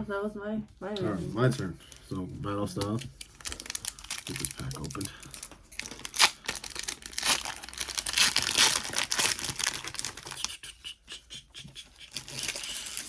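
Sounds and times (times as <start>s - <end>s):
foil wrapper crinkling: 1.5s - 10.6s, 12.0s - 13.0s
foil wrapper tearing: 2.9s - 10.6s, 12.0s - 13.0s.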